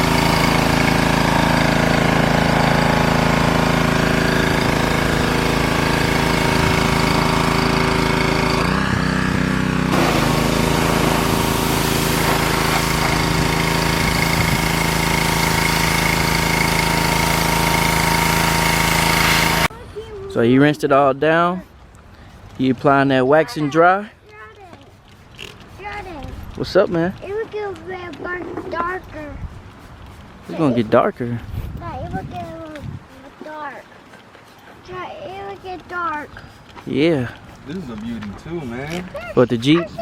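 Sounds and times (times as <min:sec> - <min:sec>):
pressure washer motor drone: 0:00.0 - 0:19.7.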